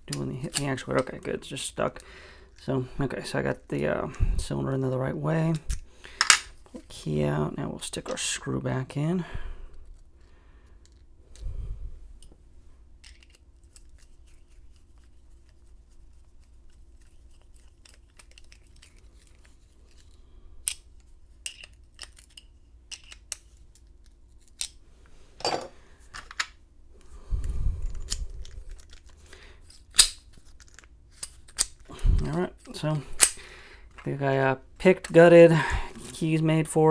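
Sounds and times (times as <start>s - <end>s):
padlock metal clicks and scrapes: 13.0s - 15.6s, 16.7s - 24.8s, 27.8s - 34.0s.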